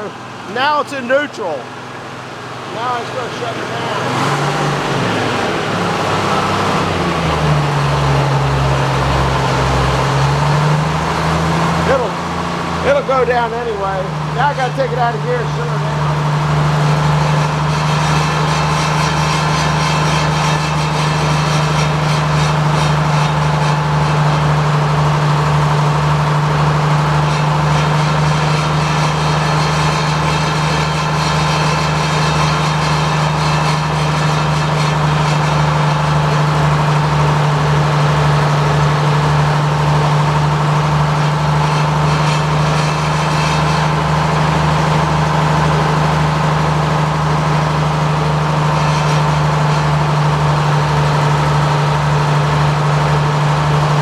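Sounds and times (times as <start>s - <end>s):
engine idling: 0.0s - 54.0s.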